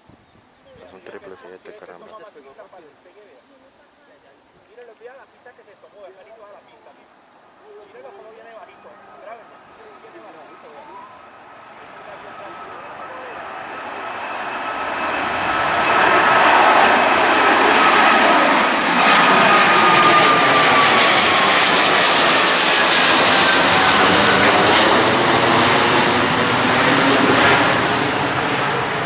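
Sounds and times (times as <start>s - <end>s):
jet roar passing overhead: 8.5s - 29.0s.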